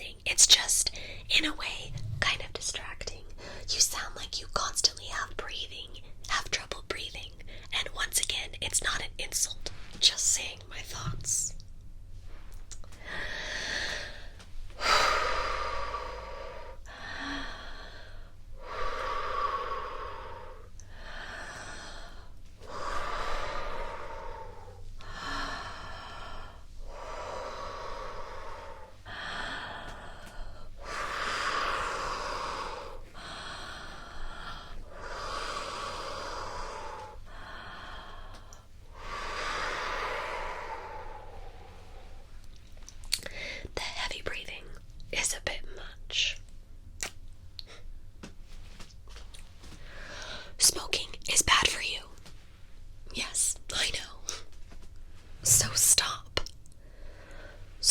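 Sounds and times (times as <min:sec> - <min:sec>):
woman breathing: 0:00.5 - 0:04.0, 0:12.3 - 0:43.8, 0:49.6 - 0:50.6, 0:55.1 - 0:57.9.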